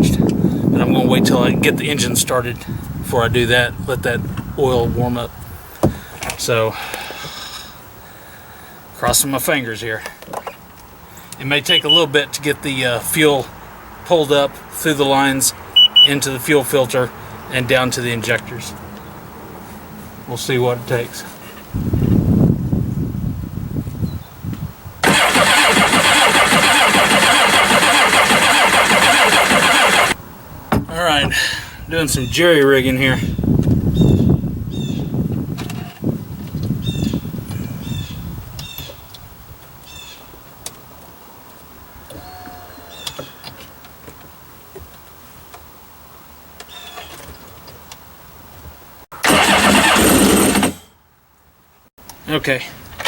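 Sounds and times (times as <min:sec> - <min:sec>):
short bird calls: 0:11.7 - 0:12.0
electric starter cranking engine: 0:25.0 - 0:30.2, 0:49.2 - 0:50.9.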